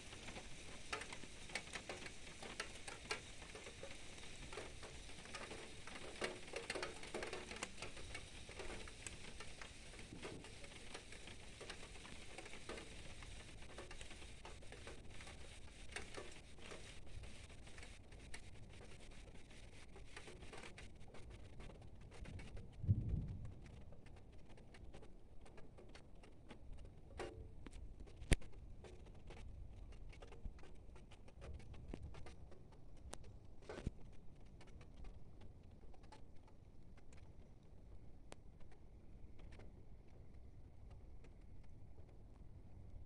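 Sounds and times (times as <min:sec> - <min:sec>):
faint steady hiss: 0:00.0 - 0:26.0
rain drops pattering: 0:00.0 - 0:43.0.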